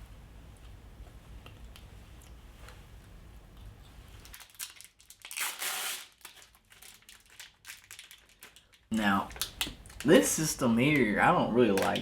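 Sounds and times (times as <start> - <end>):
snack wrapper crinkling and tearing: 4.2 - 11.1.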